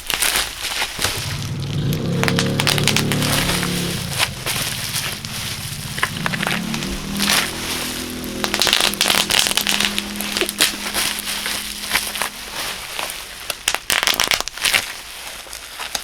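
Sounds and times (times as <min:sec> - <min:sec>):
bubble wrap popping: 0:00.0 - 0:01.4, 0:08.4 - 0:16.0
background music: 0:05.2 - 0:12.9.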